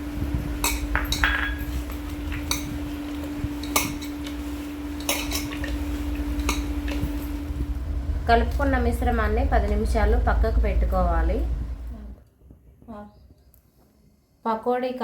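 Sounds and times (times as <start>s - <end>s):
batter mixed in metal bowl: 0.0s - 11.3s
steady low hum: 0.0s - 14.5s
light clinks against bowl: 0.6s - 1.8s.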